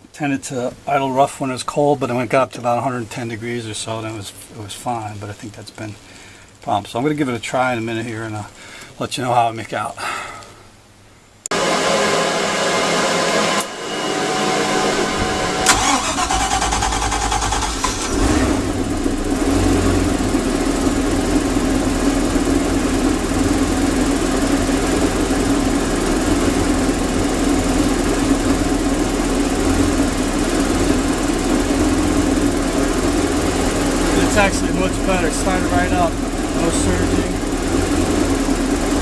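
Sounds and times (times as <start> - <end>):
starter whir: 13.6 - 20.3
boat engine idling: 14.8 - 39.0
engine cranking: 15.2 - 18.8.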